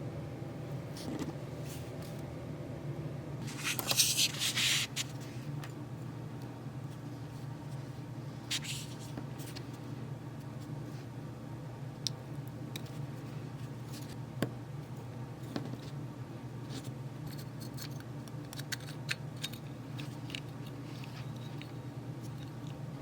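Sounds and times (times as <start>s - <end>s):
steady low hum: 0.0s - 23.0s
small parts and tools clicking: 17.3s - 22.8s.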